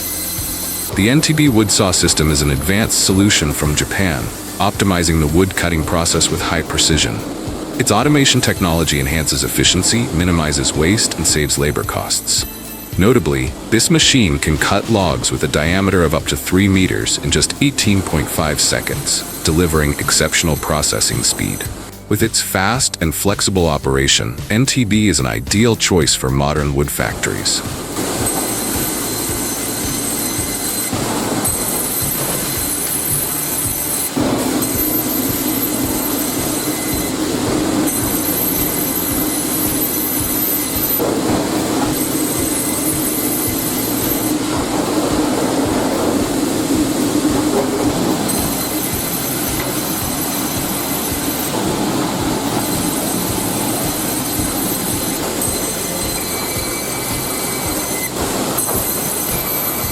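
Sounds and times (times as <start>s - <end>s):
saw machinery running: 0.0s - 23.9s, 24.9s - 59.9s
high-pitched saw whine: 0.0s - 24.3s, 24.9s - 59.9s.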